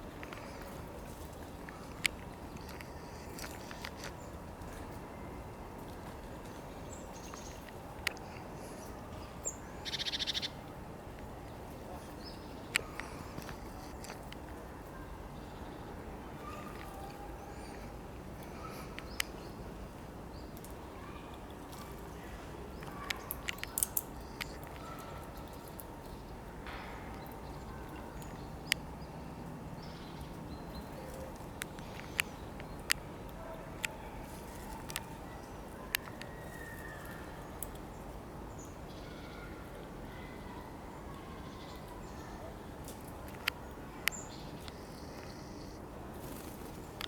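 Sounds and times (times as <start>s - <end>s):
faint bird calls: 6.4s - 10.8s, 33.4s - 37.6s, 43.3s - 46.6s.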